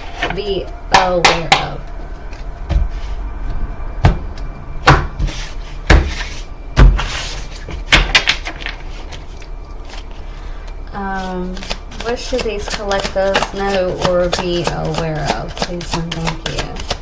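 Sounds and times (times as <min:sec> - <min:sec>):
card rustling: 0:08.5 - 0:10.8, 0:11.4 - 0:13.7.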